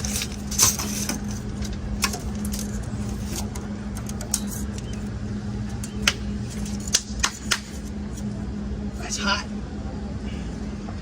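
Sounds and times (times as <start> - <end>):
metal clinks and knocks: 0.0 - 4.9
steady low hum: 0.0 - 11.0.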